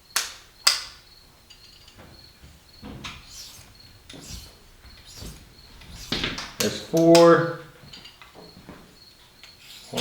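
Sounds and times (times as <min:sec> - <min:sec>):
sharpening stone scraping steel: 0:03.2 - 0:05.4.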